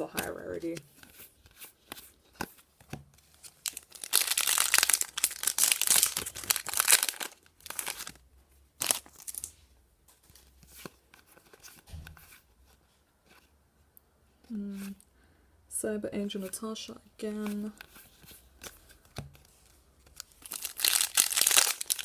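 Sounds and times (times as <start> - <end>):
foil wrapper crinkling and tearing: 3.6 - 8.2, 8.8 - 9.5, 20.2 - 22.0.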